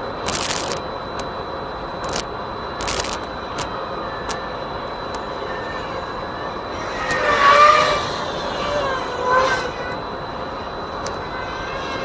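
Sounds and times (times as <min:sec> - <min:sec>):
outdoor background noise: 0:00.0 - 0:12.0
quadcopter motors whining: 0:00.0 - 0:12.0
sharp clicks: 0:00.2 - 0:01.3, 0:02.0 - 0:04.4.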